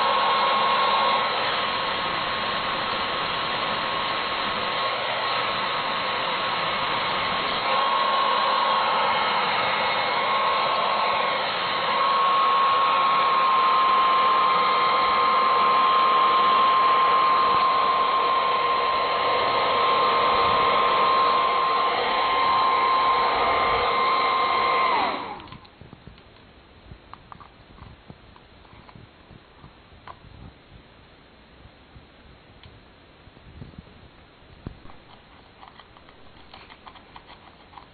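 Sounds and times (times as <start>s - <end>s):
hair dryer blowing: 0.0s - 25.7s.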